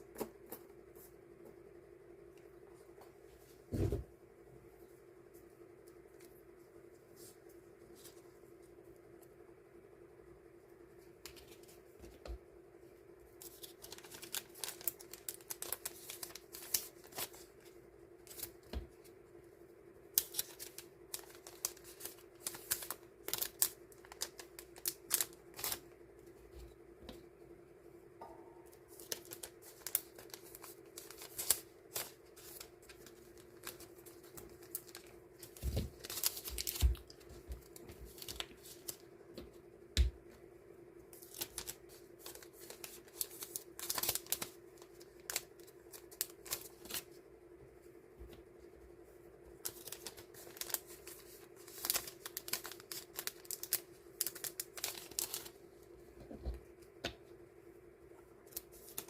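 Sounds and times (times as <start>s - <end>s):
faint hum: 0.0s - 59.0s
paper and plastic crinkling: 13.4s - 19.0s, 20.2s - 25.9s, 28.9s - 39.1s, 41.1s - 47.2s, 49.6s - 55.6s, 58.4s - 59.0s.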